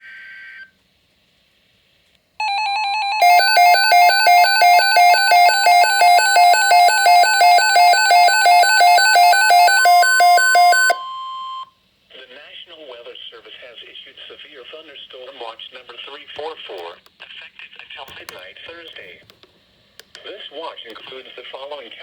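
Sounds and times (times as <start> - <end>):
loud pulsing alarm: 2.4 - 11.7.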